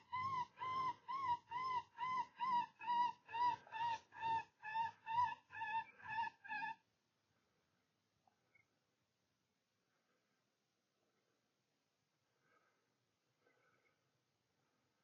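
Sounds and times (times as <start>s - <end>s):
electronic whimpering yelps: 0.0s - 6.8s.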